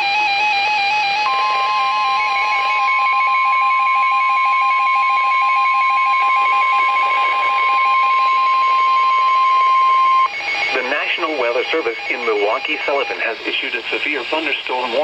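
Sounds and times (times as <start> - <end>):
steady alarm tone: 0.0 - 15.0
radio hiss: 6.2 - 15.0.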